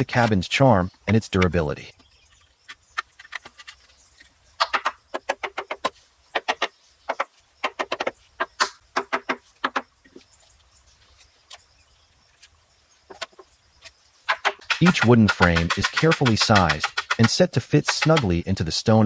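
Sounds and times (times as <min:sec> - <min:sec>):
hammer striking wood: 0:14.3 - 0:18.4.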